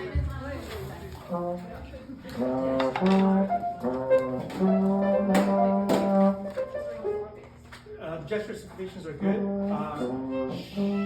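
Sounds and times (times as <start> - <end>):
brass ensemble playing chords: 1.3 - 7.4, 9.2 - 11.0.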